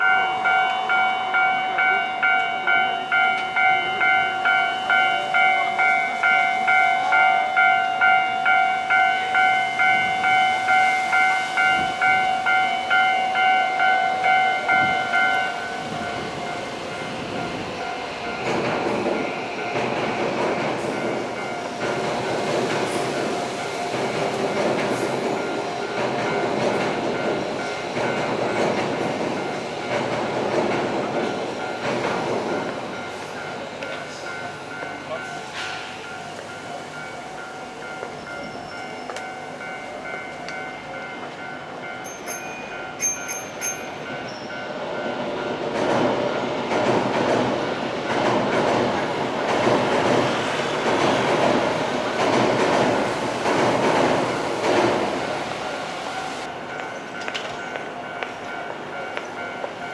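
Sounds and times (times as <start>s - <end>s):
level-crossing alarm bell ringing: 0.0s - 45.6s, 55.2s - 59.9s
train rumbling past: 0.0s - 59.9s
train wheel clatter: 14.2s - 36.6s, 37.8s - 59.9s.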